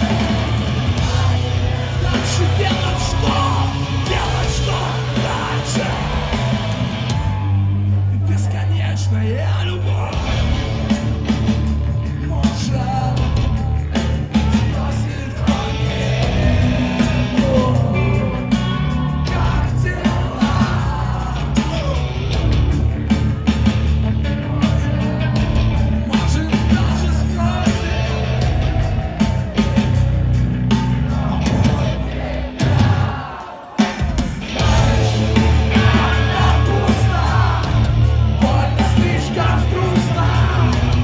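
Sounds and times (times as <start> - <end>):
person singing: 0.0 - 7.4, 31.2 - 41.0
live rock band playing: 0.0 - 8.2, 10.0 - 41.0.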